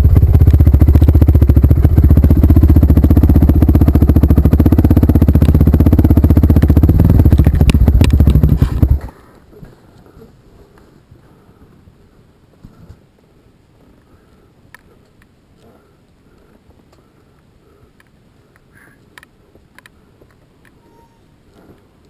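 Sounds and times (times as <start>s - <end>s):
motorcycle engine running: 0.0s - 9.1s.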